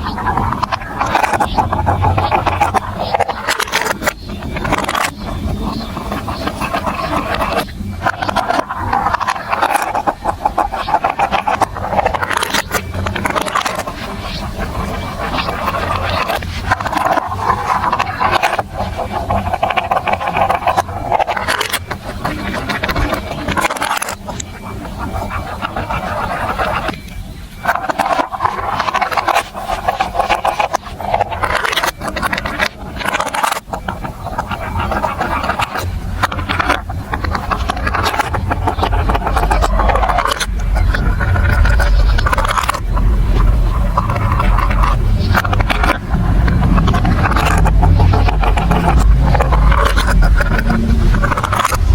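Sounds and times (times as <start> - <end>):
marbles rolling: 27.6 - 51.9
marbles clacking on plastic: 34.3 - 51.9
low rumble: 37.3 - 51.9.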